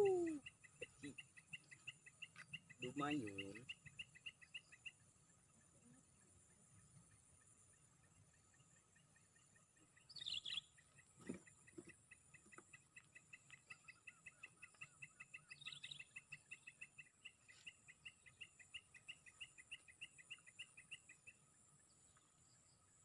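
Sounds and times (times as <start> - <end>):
bird calling repeated notes: 0.0 - 4.9.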